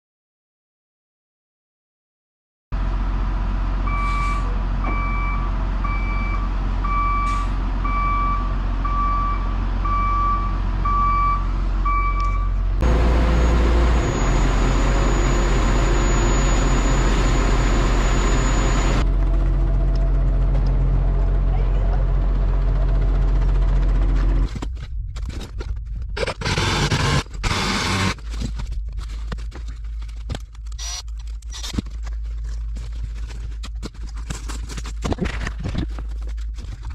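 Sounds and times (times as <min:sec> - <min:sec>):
heavy machine engine running: 0:02.8 - 0:24.6, 0:26.2 - 0:28.3
backup alarm beeping: 0:03.9 - 0:19.0.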